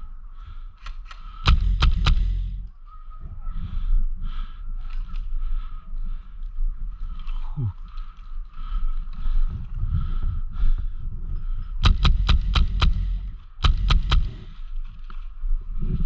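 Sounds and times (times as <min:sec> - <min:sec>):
airsoft rifle shots: 0:01.5 - 0:02.7, 0:11.8 - 0:14.7
low rumbling of movement: 0:01.5 - 0:02.7, 0:09.5 - 0:16.0.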